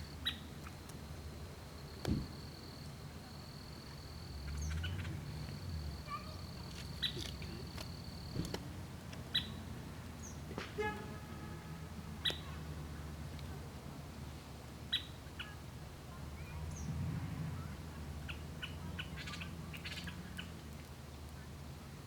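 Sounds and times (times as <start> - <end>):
low steady rumble: 15.7 - 22.0.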